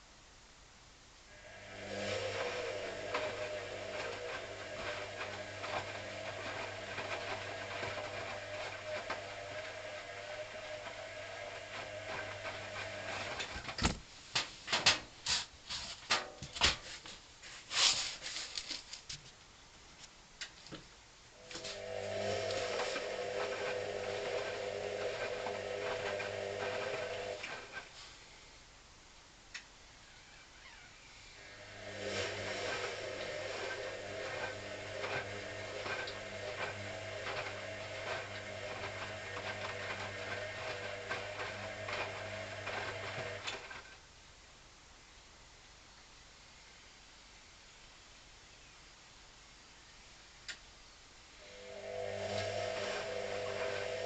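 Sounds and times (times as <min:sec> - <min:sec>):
washing machine motor hum: 0:01.3 - 0:14.0, 0:21.4 - 0:27.9, 0:31.3 - 0:44.0, 0:51.4 - 0:54.0
drum tumbling laundry: 0:01.6 - 0:19.4, 0:20.7 - 0:28.2, 0:31.6 - 0:44.0.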